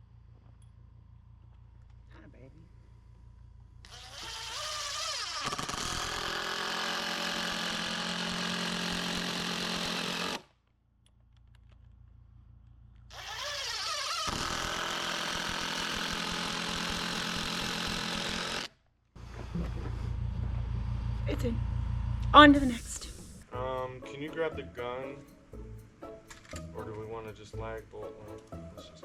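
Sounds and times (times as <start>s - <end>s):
power drill driving fastener: 3.8s - 10.5s, 13.1s - 19.9s.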